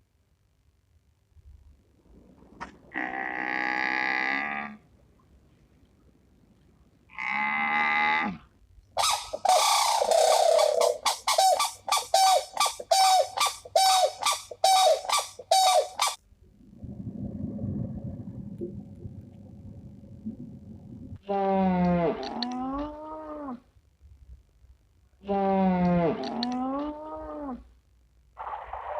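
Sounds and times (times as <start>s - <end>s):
drawn-out animal call: 9.0s - 16.2s
short repeated animal calls: 9.0s - 16.2s
low noisy rumbling: 16.2s - 21.3s.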